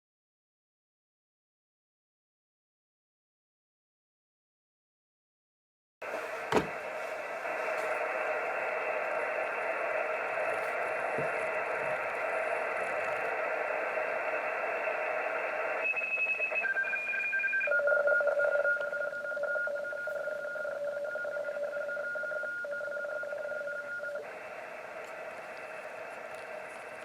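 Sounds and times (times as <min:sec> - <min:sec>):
radio hiss: 0:06.0 - 0:27.0
electronic data tones: 0:07.8 - 0:27.0.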